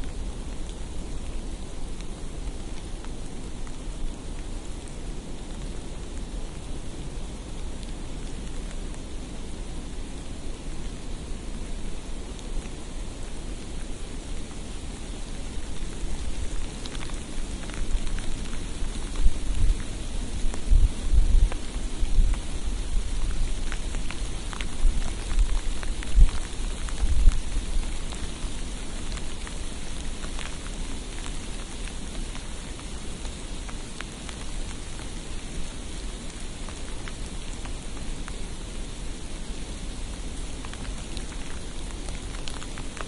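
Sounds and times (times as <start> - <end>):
precipitation hissing on a street: 0.0 - 43.0
wind buffeting microphone: 15.7 - 28.2.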